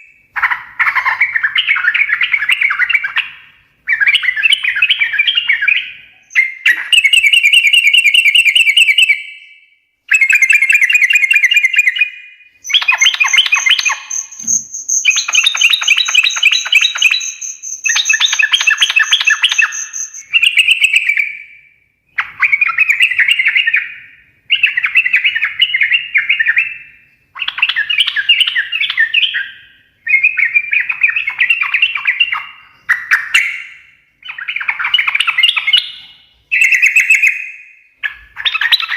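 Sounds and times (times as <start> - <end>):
bird chattering song: 0.0 - 38.9
steady high whistle: 13.4 - 20.3.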